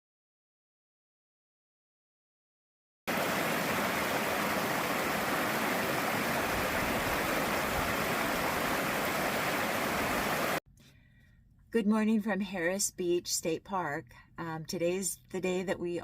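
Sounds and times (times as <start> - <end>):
rushing water: 3.1 - 10.6.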